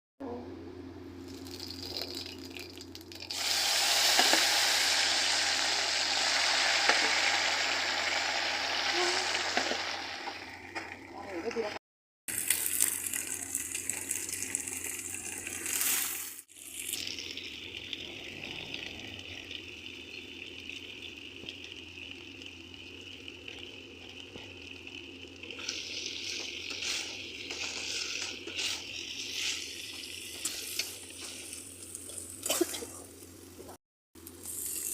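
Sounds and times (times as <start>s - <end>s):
potatoes sizzling in oil: 1.3s - 11.7s, 12.3s - 17.4s, 25.5s - 33.1s, 34.2s - 34.9s.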